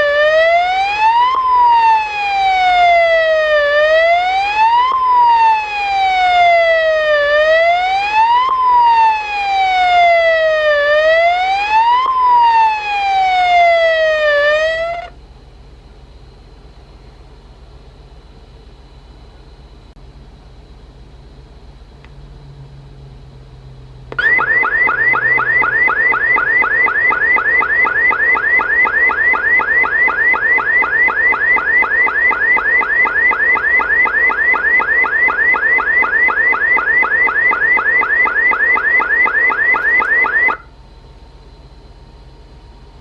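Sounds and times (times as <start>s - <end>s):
alarm rising sweep tone: 0.0s - 15.1s, 24.1s - 40.7s.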